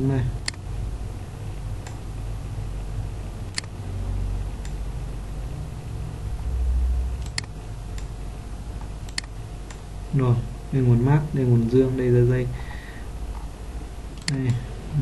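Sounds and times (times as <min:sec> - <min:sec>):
steady low rumble: 0:00.0 - 0:15.0
computer mouse clicking: 0:03.5 - 0:03.8, 0:07.2 - 0:08.2, 0:08.8 - 0:09.8, 0:14.2 - 0:14.6.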